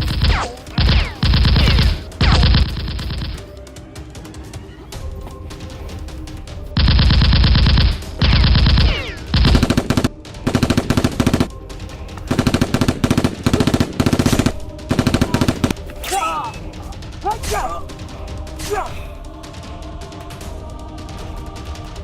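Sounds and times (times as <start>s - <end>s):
quiet background music: 0.0s - 22.0s
automatic gunfire bursts: 6.8s - 11.5s, 12.3s - 15.8s.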